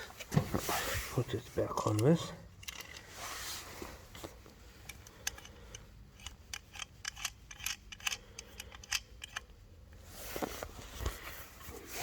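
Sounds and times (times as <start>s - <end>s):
small metal parts clicking: 1.8s - 3.1s, 4.8s - 9.6s.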